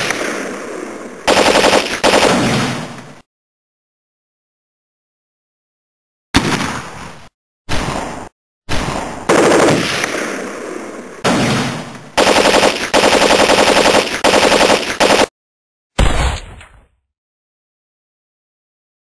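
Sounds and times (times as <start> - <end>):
gunshots: 0.0 - 3.0, 6.4 - 15.3
automatic gunfire bursts: 1.3 - 2.5, 9.3 - 9.9, 12.2 - 15.3.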